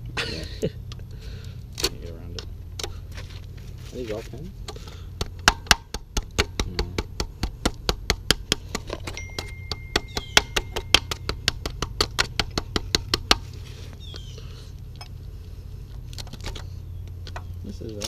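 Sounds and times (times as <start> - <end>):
low hum: 0.0 - 18.0.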